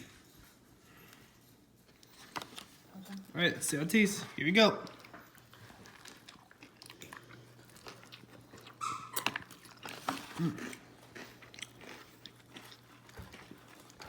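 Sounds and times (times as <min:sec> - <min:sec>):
person chewing with wet clicks: 0:04.7 - 0:14.0.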